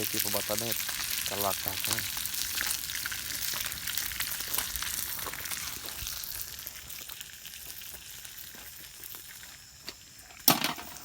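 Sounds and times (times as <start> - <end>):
fish frying in hot oil: 0.0 - 11.0.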